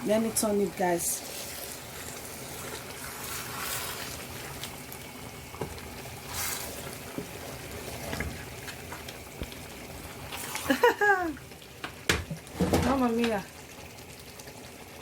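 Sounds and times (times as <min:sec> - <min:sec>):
soup bubbling and sloshing: 0:00.9 - 0:12.7.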